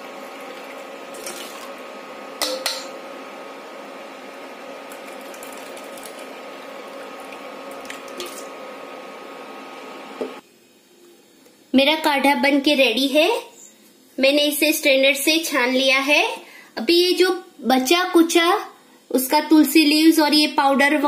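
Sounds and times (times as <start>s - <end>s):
liquid pouring through a strainer: 0.3s - 1.8s, 4.8s - 8.6s.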